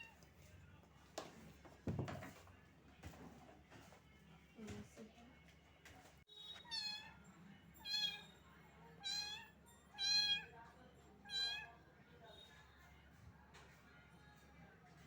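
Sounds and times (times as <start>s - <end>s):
kitten meowing: 6.4s - 7.1s, 7.8s - 8.2s, 10.0s - 10.5s.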